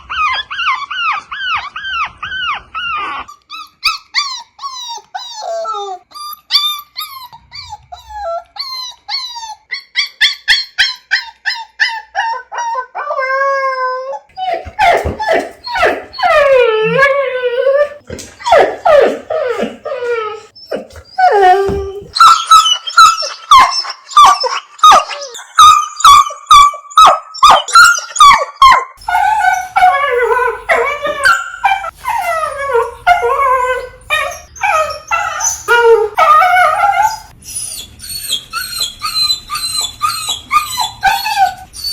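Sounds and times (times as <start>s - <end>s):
dogs whining: 0.0s - 41.9s
dog howl-like cry: 12.2s - 37.3s.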